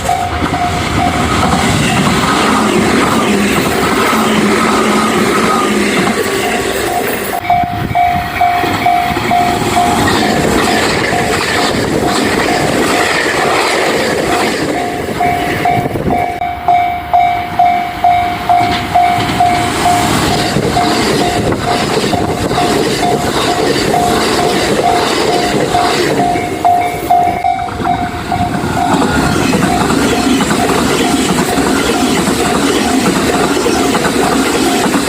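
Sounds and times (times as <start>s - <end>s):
train wheels clattering over rails: 0.0s - 7.4s, 8.2s - 16.2s, 18.5s - 35.0s
level-crossing bell ringing: 4.2s - 11.4s, 14.7s - 32.2s.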